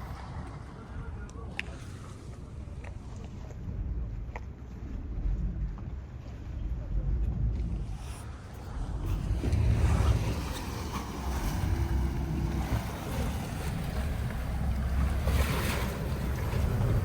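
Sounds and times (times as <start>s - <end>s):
wind buffeting microphone: 0.0s - 17.0s
rushing water: 7.2s - 17.0s.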